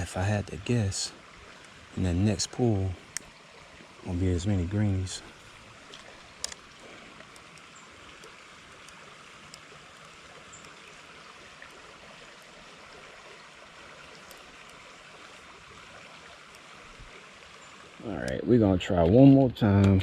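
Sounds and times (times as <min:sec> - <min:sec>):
creek water running: 0:00.0 - 0:20.0
faint clicks: 0:05.9 - 0:10.8, 0:14.1 - 0:14.8.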